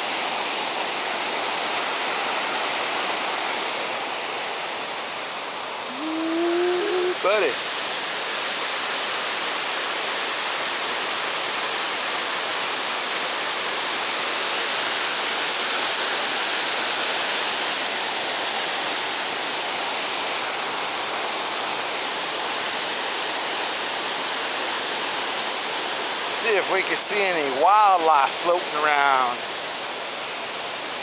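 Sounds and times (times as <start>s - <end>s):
falling water rushing: 0.0s - 31.0s.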